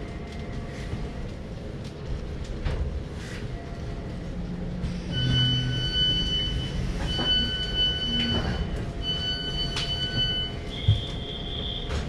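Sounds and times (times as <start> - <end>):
train running rumble: 0.0 - 12.0
high steady brake squeal: 5.1 - 12.0.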